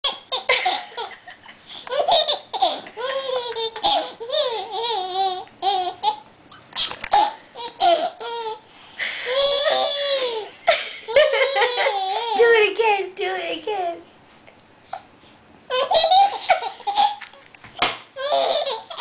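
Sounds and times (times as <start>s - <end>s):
child giggling: 9.3s - 12.5s.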